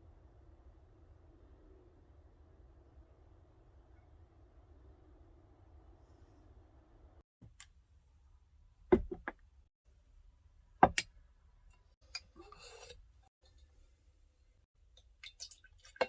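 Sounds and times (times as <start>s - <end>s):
knocks and clicks of objects handled: 8.9s - 9.6s, 10.8s - 13.7s.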